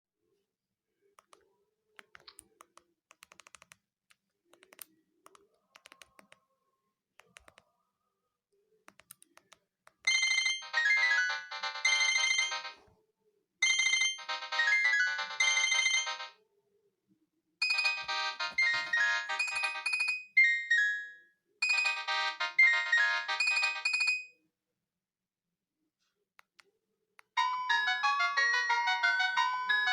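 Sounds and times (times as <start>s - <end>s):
phone ringtone melody: 10.1s - 12.8s, 13.6s - 16.4s, 17.6s - 24.4s, 27.4s - 29.9s.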